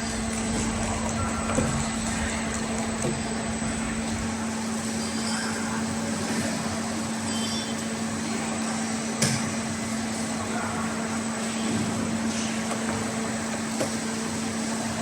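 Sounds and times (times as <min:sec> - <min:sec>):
bending machine running: 0:00.0 - 0:06.6.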